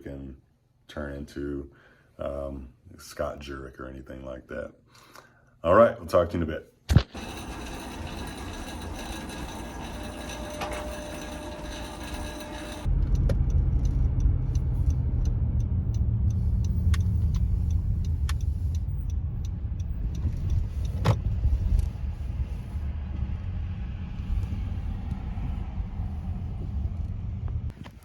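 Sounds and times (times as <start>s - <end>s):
sharp clicks and ticks: 6.9s - 23.6s
steady hum: 7.0s - 12.9s, 13.5s - 27.7s
car engine and road noise: 7.0s - 28.0s.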